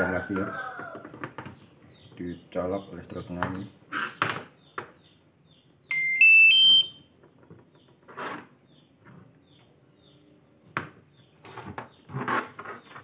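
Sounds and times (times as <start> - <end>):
rising electronic beeps: 5.9 - 7.0.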